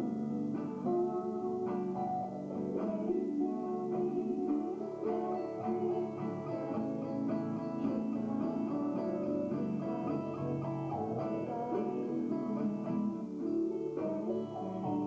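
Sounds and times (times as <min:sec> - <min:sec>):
guitar plucked quickly: 0:00.0 - 0:15.0.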